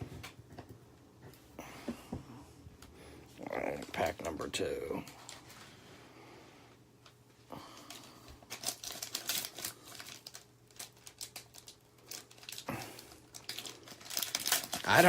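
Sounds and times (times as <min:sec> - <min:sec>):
card pack wrapper crinkling: 0:07.8 - 0:15.0.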